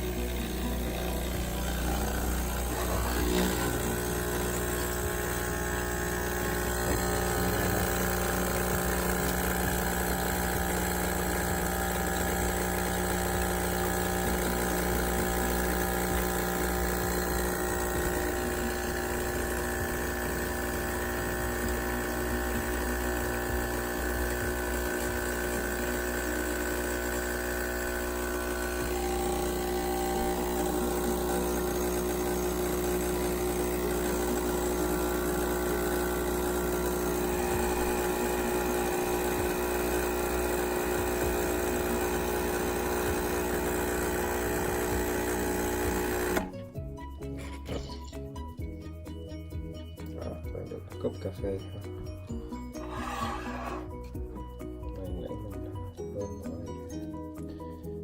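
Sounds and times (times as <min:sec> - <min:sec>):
steam wand hissing in milk: 0:01.5 - 0:46.4, 0:52.8 - 0:53.9.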